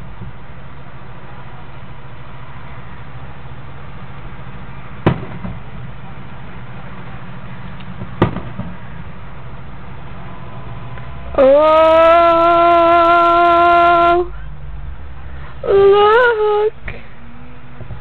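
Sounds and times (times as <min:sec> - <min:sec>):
low background hum: 0:00.0 - 0:18.0
distant firework bangs: 0:05.0 - 0:05.9, 0:07.9 - 0:09.2.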